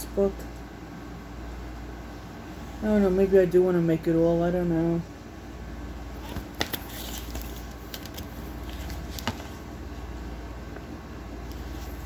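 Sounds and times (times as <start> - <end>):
low room hum: 0.0 - 12.0
paper pages turning: 6.2 - 9.6.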